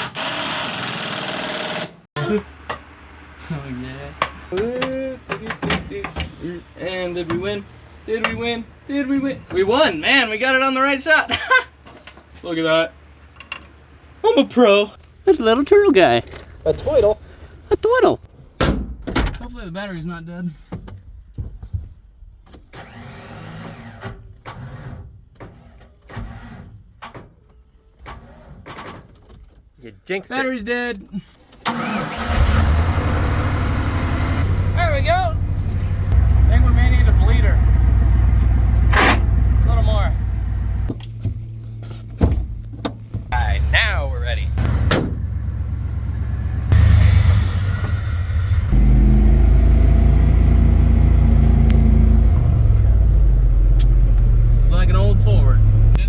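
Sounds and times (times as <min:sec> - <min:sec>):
truck engine droning: 0:32.1 - 0:41.7, 0:43.3 - 0:56.0.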